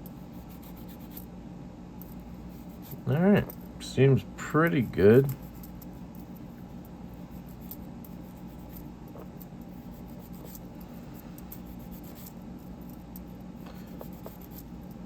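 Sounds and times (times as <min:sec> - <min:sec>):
steady low hum: 0:00.0 - 0:15.0
metal fidget toy scratching and ticking: 0:00.4 - 0:01.3, 0:05.1 - 0:13.4, 0:14.0 - 0:15.0.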